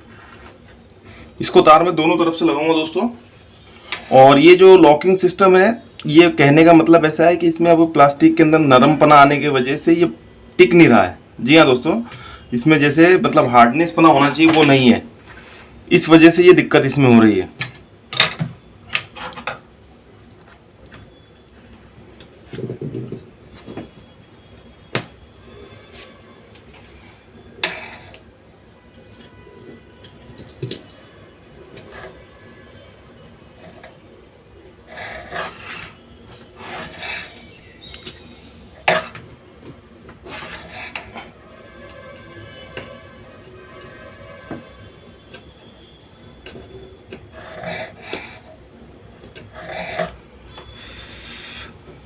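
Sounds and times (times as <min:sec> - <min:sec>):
plastic parts rubbing and scraping: 0:34.9 - 0:37.5.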